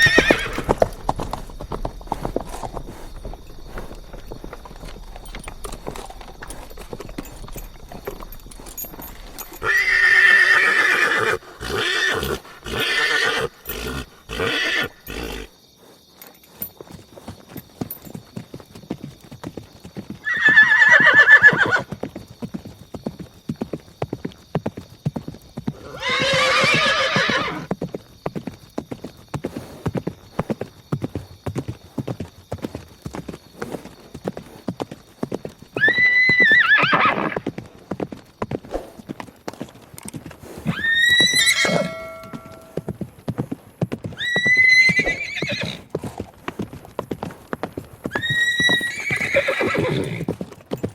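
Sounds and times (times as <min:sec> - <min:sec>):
horse whinnying: 0:00.0 - 0:01.6, 0:02.2 - 0:15.5, 0:20.2 - 0:21.9, 0:25.7 - 0:27.7, 0:35.8 - 0:37.5, 0:40.6 - 0:42.9, 0:44.2 - 0:45.9, 0:48.1 - 0:50.3
clip-clop of hooves: 0:00.0 - 0:50.9.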